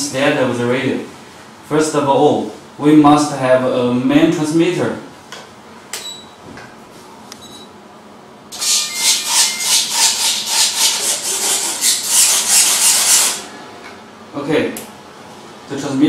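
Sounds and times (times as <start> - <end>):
short faint beeps: 7.4 - 7.7.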